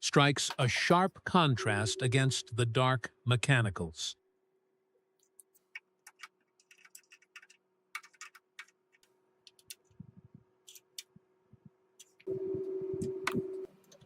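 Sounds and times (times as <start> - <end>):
faint steady hum: 0.2 - 5.4, 9.1 - 14.0.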